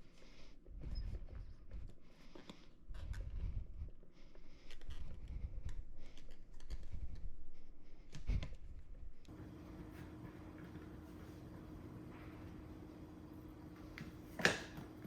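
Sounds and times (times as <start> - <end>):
small clicks and scrapes: 0.8 - 9.3.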